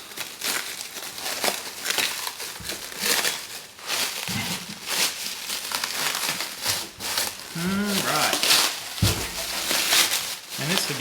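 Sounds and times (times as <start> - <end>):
packing material crinkling: 0.0 - 11.0.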